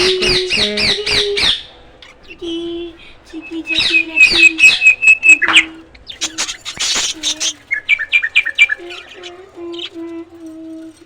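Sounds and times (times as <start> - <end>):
budgerigars chirping and squawking: 0.0 - 10.0.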